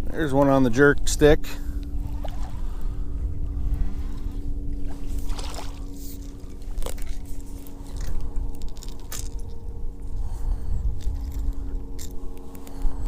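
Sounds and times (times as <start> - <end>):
boat motor humming: 0.0 - 13.0
wind rumbling on microphone: 0.0 - 13.0
water splashes: 0.8 - 10.0.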